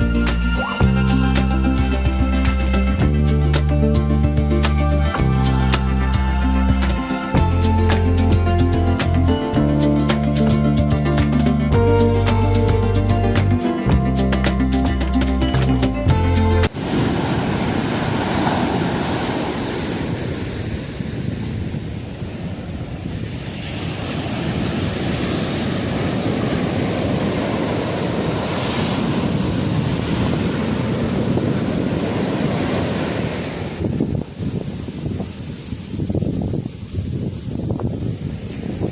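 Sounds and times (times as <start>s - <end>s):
wind buffeting microphone: 16.1s - 38.9s
surf washing on a beach: 16.6s - 38.9s.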